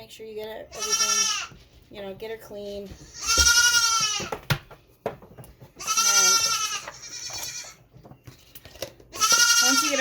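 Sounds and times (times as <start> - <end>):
goat bleating: 0.7 - 1.6, 3.0 - 4.4, 5.8 - 7.8, 9.1 - 10.0.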